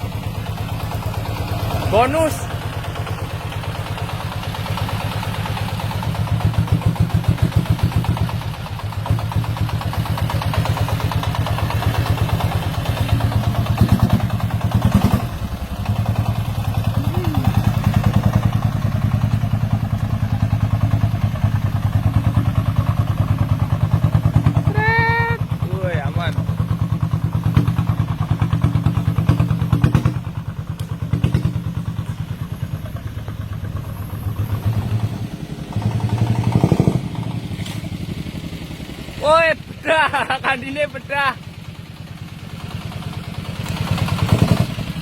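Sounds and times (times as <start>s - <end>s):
diesel engine running: 0.0s - 45.0s.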